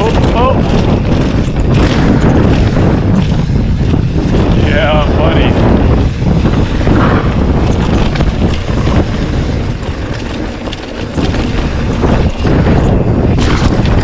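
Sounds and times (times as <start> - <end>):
bike knocks and rattles: 0.0 - 14.0
wind buffeting microphone: 0.0 - 14.0
tyre noise on dirt: 5.6 - 14.0.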